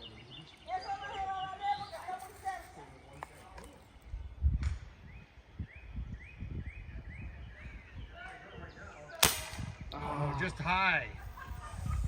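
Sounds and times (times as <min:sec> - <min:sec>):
bird chirping: 0:00.0 - 0:09.2
wind rumble on microphone: 0:03.9 - 0:12.0
air rifle firing: 0:09.2 - 0:09.8.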